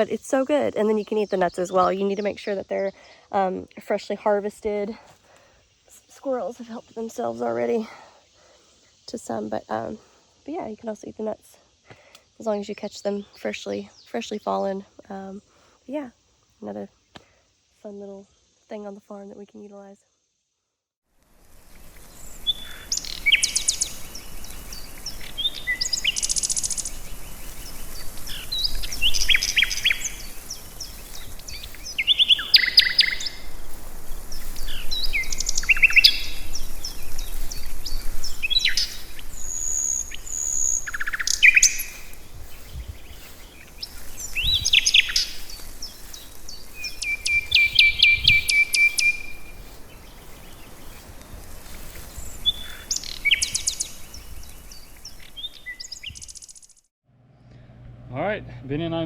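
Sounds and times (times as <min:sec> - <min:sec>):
songbirds chirping and trilling: 0:00.0 - 0:19.9, 0:21.8 - 0:56.8.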